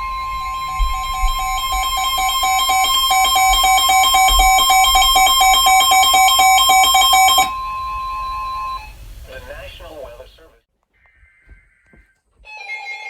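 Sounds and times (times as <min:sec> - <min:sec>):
steady warning alert tone: 0:00.0 - 0:09.0
two-pitch electronic alarm beeping: 0:00.0 - 0:09.0.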